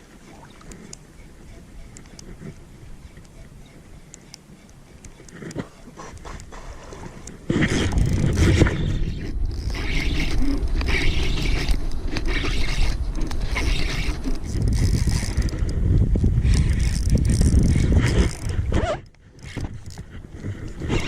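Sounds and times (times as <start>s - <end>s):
wind buffeting microphone: 6.0s - 21.0s.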